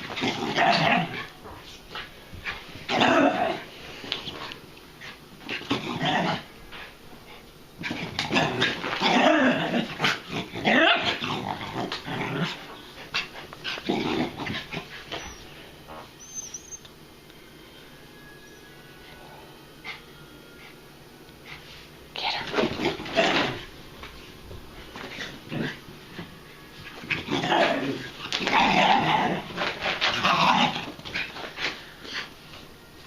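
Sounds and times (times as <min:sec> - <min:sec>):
dogs growling and whining: 0:00.0 - 0:01.4, 0:02.9 - 0:03.7, 0:04.4 - 0:06.5, 0:07.8 - 0:17.0, 0:22.6 - 0:23.7, 0:25.0 - 0:32.4.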